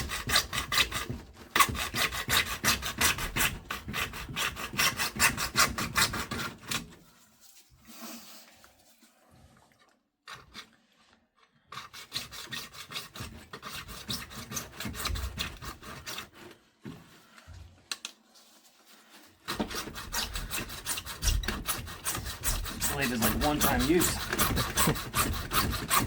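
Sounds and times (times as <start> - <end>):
hand saw cutting plastic pipe: 0.0 - 7.0, 10.3 - 10.8, 11.7 - 16.6, 19.4 - 26.0.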